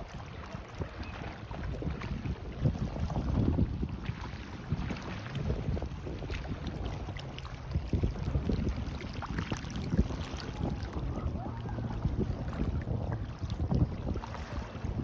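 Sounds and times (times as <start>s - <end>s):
small waves washing on beach: 0.0s - 15.0s
wind on microphone: 0.0s - 15.0s.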